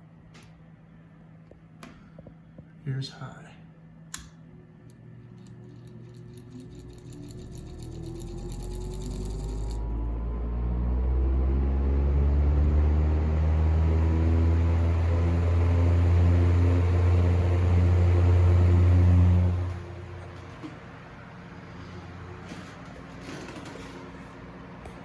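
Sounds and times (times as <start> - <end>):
table fan motor humming: 4.9 - 10.1.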